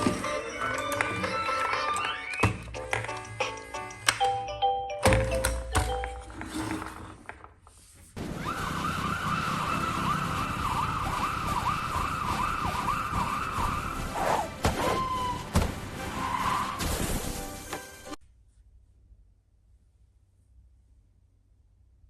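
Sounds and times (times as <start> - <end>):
emergency vehicle siren yelp: 8.2 - 16.8.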